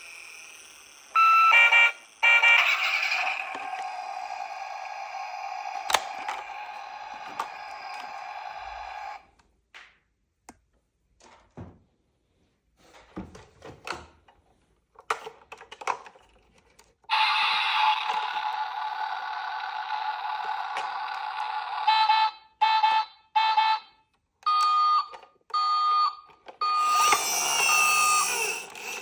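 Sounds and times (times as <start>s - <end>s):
toy electronic siren: 0.1s - 9.2s, 17.1s - 23.8s, 24.5s - 29.0s
plastic toy cars clicking: 0.5s - 8.6s, 15.0s - 22.1s, 26.3s - 29.0s.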